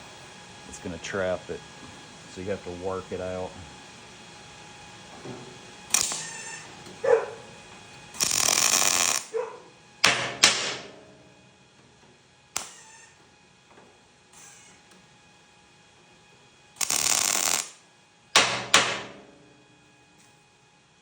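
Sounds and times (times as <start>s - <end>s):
welding arc crackling: 5.7s - 11.3s, 12.6s - 13.2s, 16.8s - 17.8s.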